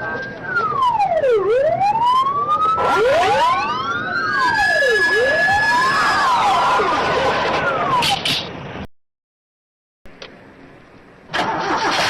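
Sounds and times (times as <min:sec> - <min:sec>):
sirens wailing: 0:00.0 - 0:08.4.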